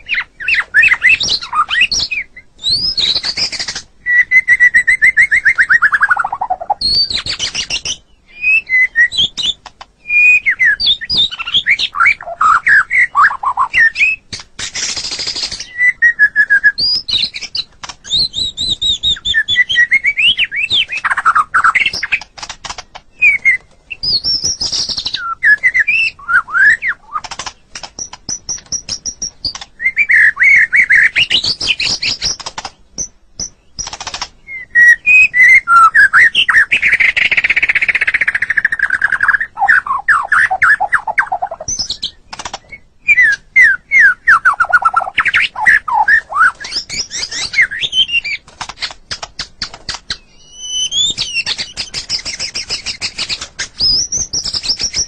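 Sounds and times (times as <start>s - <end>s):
bird singing: 0.0s - 55.0s
dry clicks: 9.4s - 10.0s, 21.9s - 23.2s, 27.2s - 29.7s, 31.4s - 34.4s, 41.7s - 42.8s, 48.4s - 50.2s.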